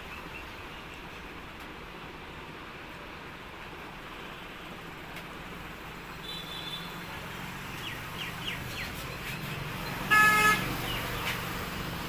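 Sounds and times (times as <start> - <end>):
birds chirping: 7.6 - 11.6.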